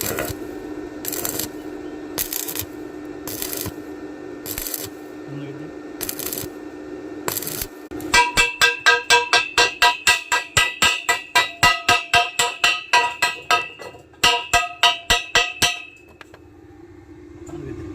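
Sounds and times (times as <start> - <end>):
metal pipe being struck: 8.0 - 16.3.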